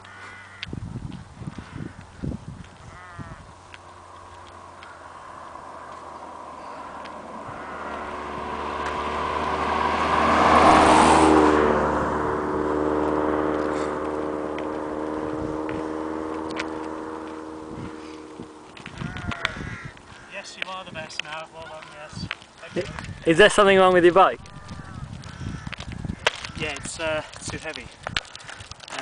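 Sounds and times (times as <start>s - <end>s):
vehicle passing by: 2.9s - 25.7s.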